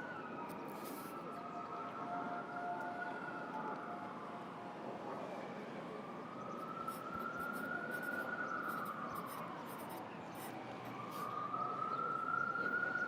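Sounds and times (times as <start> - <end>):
city traffic hum: 2.9 - 13.0
distant siren wailing: 5.6 - 13.0.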